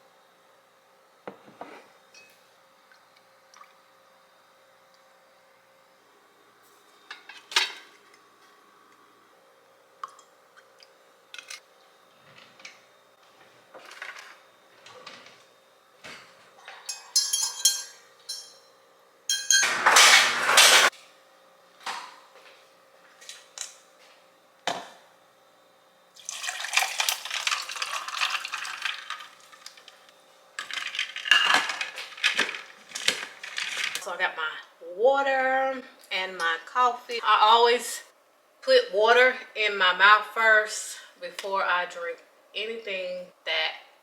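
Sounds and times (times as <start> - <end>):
cups and dishes clattering: 16.7 - 18.6
liquid pouring: 26.2 - 29.9.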